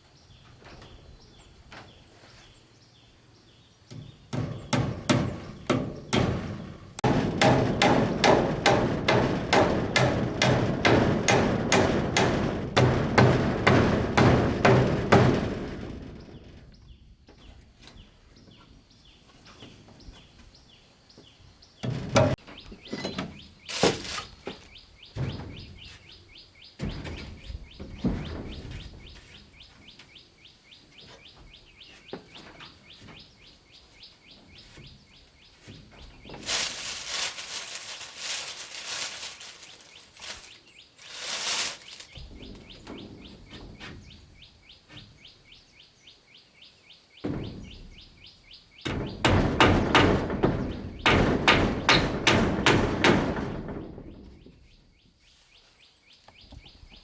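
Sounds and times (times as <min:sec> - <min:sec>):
loud knocks: 0:03.9 - 0:16.7, 0:42.2 - 0:44.5, 0:47.2 - 0:48.2, 0:48.8 - 0:54.8
bird chirping: 0:16.2 - 0:49.4, 0:54.2 - 0:57.0
rustling or scraping: 0:22.0 - 0:24.8, 0:34.5 - 0:45.2.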